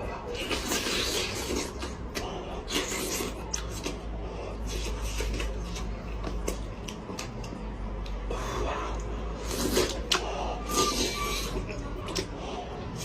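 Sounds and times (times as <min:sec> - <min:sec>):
steady low hum: 0:00.0 - 0:13.0
person chewing meat: 0:00.2 - 0:13.0
wet mouth clicks and smacks: 0:05.4 - 0:08.2.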